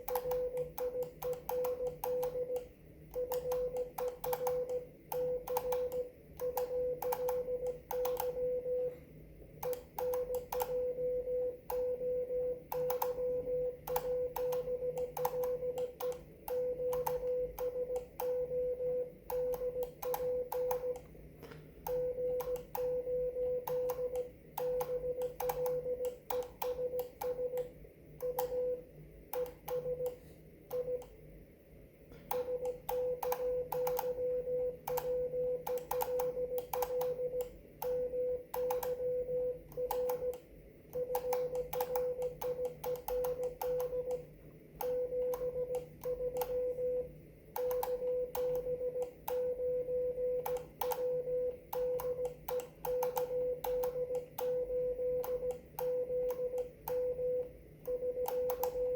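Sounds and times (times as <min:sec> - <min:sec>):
sharp keying clicks: 0:00.0 - 0:08.3, 0:58.2 - 0:58.8
morse code tone: 0:00.0 - 0:09.0, 0:09.6 - 0:21.1, 0:21.9 - 0:31.2, 0:32.4 - 0:40.4, 0:44.8 - 0:58.9.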